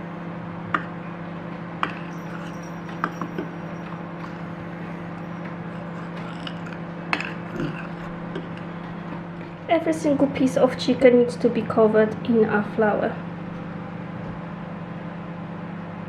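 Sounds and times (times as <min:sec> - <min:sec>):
steady low hum: 0:00.0 - 0:16.0
spoon clinking against a dish: 0:01.8 - 0:04.5
spoon scraping: 0:01.8 - 0:08.1.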